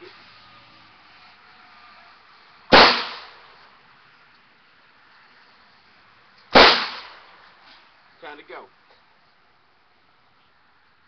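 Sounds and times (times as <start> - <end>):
gunshot: 2.7 - 3.5, 6.5 - 7.4.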